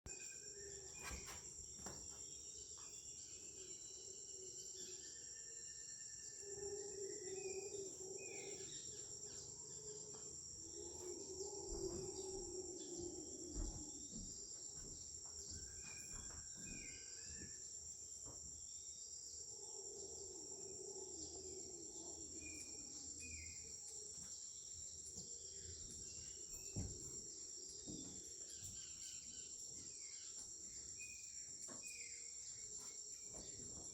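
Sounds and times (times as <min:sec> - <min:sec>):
high-pitched insect drone: 0:02.8 - 0:17.3.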